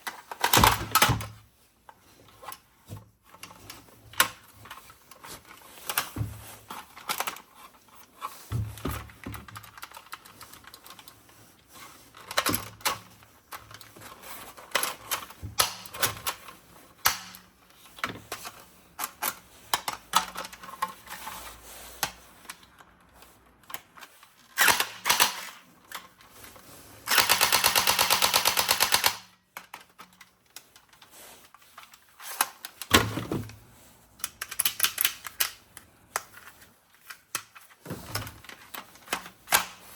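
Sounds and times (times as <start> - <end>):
toy gun clicks and knocks: 24.6 - 25.6, 27.1 - 30.0, 34.2 - 35.6.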